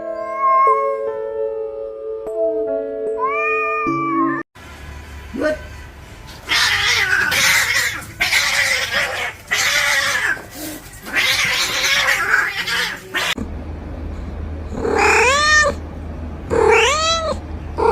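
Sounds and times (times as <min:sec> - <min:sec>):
cat meowing: 0:00.0 - 0:01.0, 0:03.2 - 0:04.1, 0:06.5 - 0:10.4, 0:11.0 - 0:13.4, 0:14.8 - 0:15.8, 0:16.5 - 0:17.9
cats yowling: 0:00.0 - 0:01.0, 0:03.2 - 0:04.1, 0:06.4 - 0:13.4, 0:14.8 - 0:15.8, 0:16.5 - 0:17.9.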